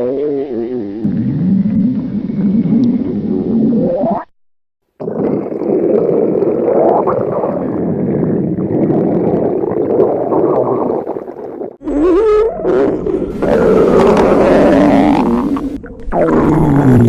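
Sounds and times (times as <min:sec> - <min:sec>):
stomach growling: 0:00.0 - 0:04.3, 0:05.0 - 0:17.0.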